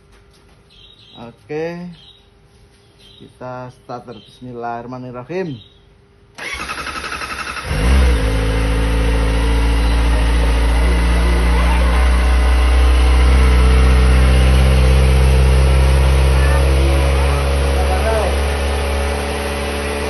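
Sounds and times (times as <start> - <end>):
motorcycle electric starter cranking: 6.4 - 8.4
motorcycle engine idling: 6.4 - 20.0.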